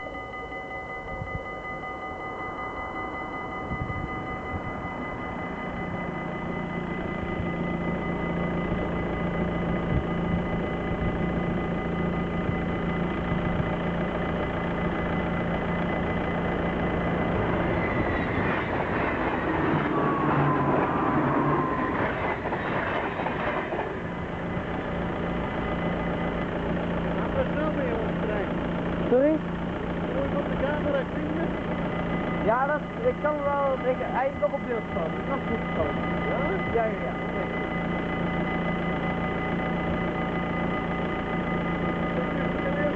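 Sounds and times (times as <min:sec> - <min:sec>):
electric train passing: 0:00.0 - 0:42.9
level crossing warning bells: 0:00.0 - 0:42.9
wheels clattering on rails: 0:17.0 - 0:25.5.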